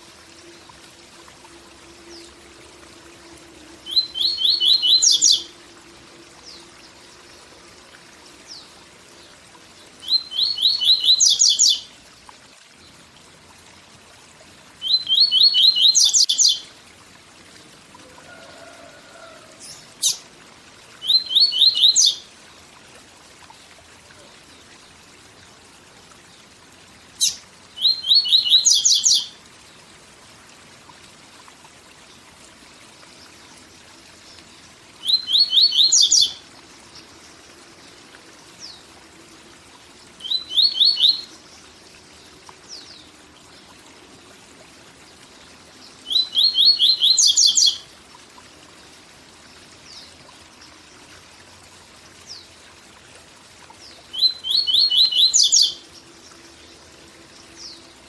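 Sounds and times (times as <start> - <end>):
waterfall noise: 0.0 - 58.0
bird singing: 3.8 - 5.5, 21.0 - 22.3, 27.2 - 29.3, 35.0 - 36.4, 40.2 - 41.4, 46.0 - 47.8, 54.1 - 55.8.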